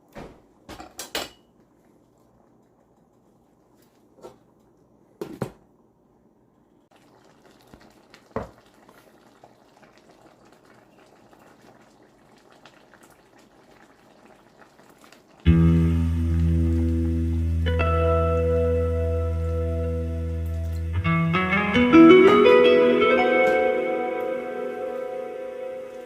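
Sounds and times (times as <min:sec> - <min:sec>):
pot bubbling on stove: 0:06.9 - 0:17.8
music: 0:15.5 - 0:26.0.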